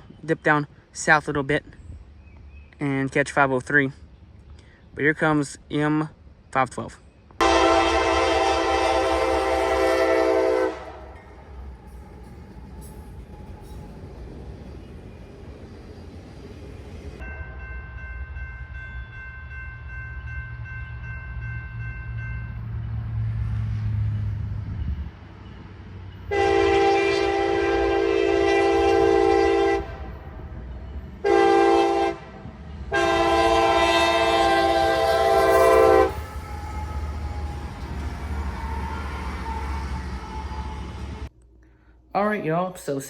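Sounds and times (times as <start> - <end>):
diesel locomotive rumble: 7.1 - 18.8, 19.7 - 41.3
train air horn blasts: 7.4 - 11.4, 26.3 - 30.2, 31.2 - 41.3.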